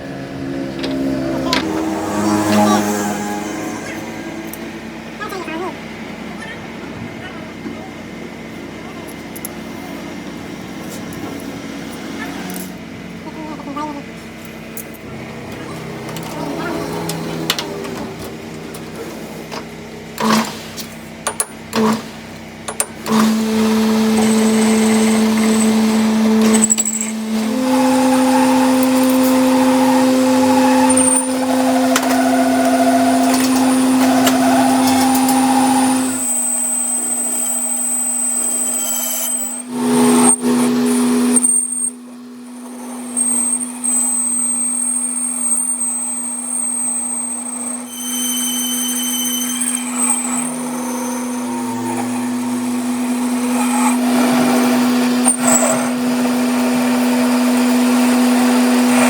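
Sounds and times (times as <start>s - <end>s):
hissing cutting noise: 0.0s - 6.1s, 21.7s - 41.6s
lathe motor hum: 0.0s - 59.0s
thin high whine: 23.1s - 59.0s.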